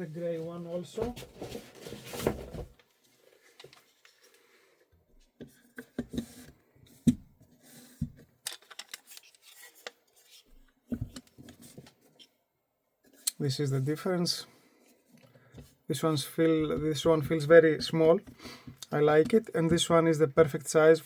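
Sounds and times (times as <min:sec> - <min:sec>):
rifle handling rustle: 0:08.5 - 0:10.6.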